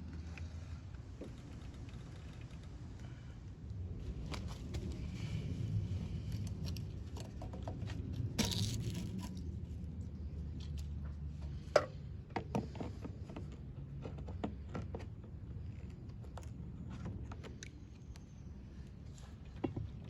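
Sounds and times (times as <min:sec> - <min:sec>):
low steady rumble: 0:00.0 - 0:20.0
clicks and knocks of engine parts: 0:00.1 - 0:03.2, 0:06.2 - 0:09.5, 0:10.5 - 0:18.3.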